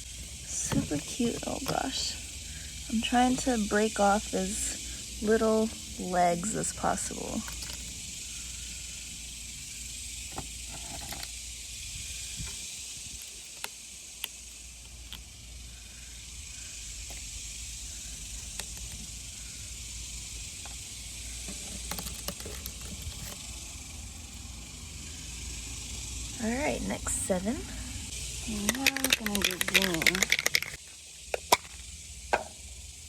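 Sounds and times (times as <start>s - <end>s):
high-pitched hiss: 0.0s - 33.0s
light clicks of small objects: 28.5s - 30.8s.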